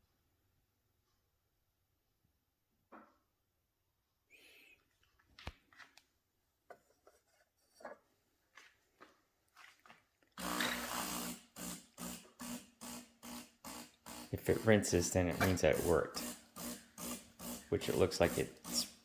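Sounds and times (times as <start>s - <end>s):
espresso machine pump pulsing buzz: 10.4s - 19.0s.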